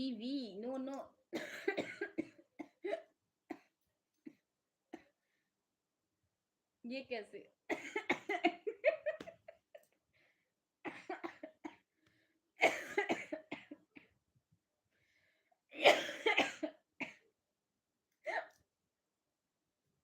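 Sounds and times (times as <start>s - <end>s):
person coughing: 1.4s - 3.7s, 7.7s - 8.6s, 12.6s - 13.8s, 15.8s - 17.2s, 18.3s - 18.6s.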